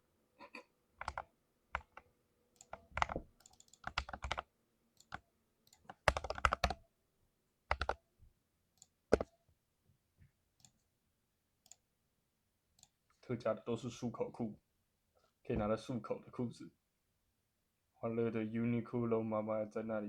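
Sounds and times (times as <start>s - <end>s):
mechanical keyboard typing: 1.0s - 2.0s, 2.6s - 4.4s, 5.0s - 6.8s, 7.7s - 8.0s, 9.1s - 9.3s.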